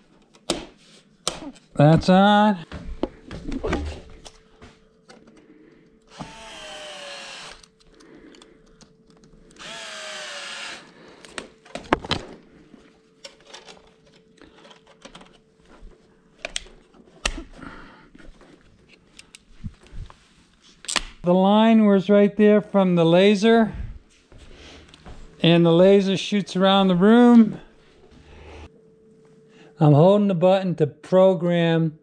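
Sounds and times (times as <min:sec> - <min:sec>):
power drill whining: 0:06.1 - 0:07.8, 0:09.5 - 0:11.0.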